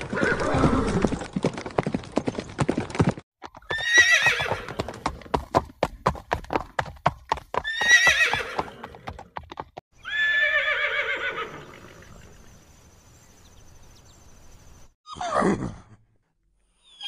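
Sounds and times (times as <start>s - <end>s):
horse whinnying: 0.0s - 1.2s, 3.6s - 5.1s, 7.6s - 9.0s, 10.0s - 12.1s, 15.1s - 15.9s
hooves clip-clopping: 0.0s - 9.8s.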